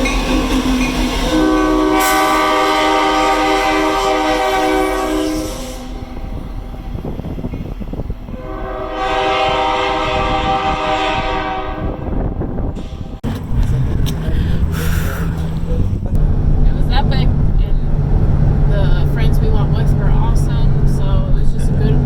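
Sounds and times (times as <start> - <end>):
steam locomotive whistle: 0.0 - 7.0, 8.4 - 13.2
moving train rumble: 0.0 - 22.0.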